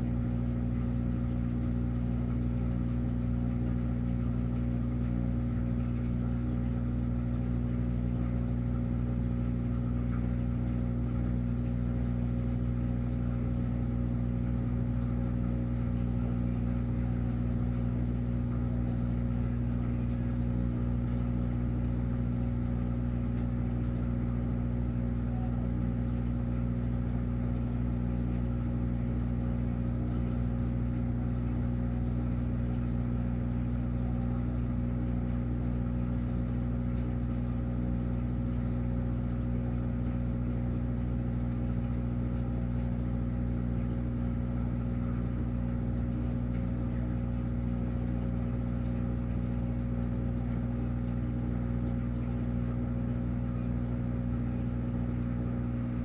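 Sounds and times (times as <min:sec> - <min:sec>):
washing machine humming: 0:00.0 - 0:56.0.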